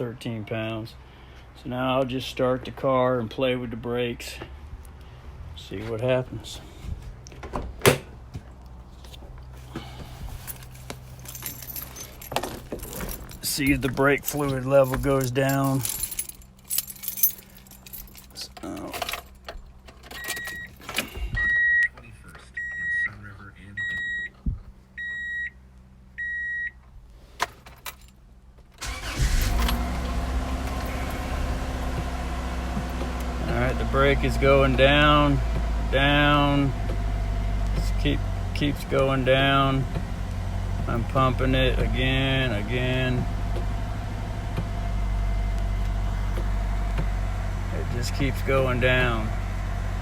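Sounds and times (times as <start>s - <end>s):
car engine starting and running: 0.9s - 27.0s, 27.7s - 50.0s
keys jangling: 10.4s - 21.3s
car warning chime beeps: 20.2s - 20.8s, 21.4s - 24.4s, 25.0s - 25.6s, 26.2s - 26.8s, 37.8s - 38.2s.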